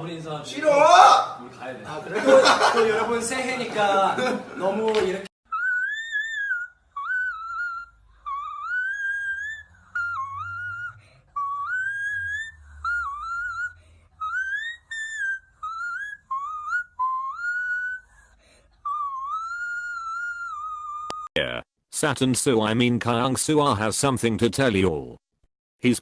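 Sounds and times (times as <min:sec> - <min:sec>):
person whistling a tune: 0:05.5 - 0:21.2.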